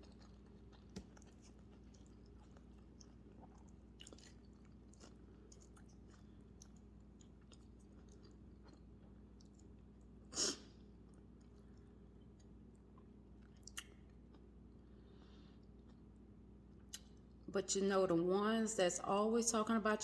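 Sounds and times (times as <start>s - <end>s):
chewing mouth clicks and smacks: 0.0s - 10.2s, 11.0s - 14.5s, 16.8s - 17.4s.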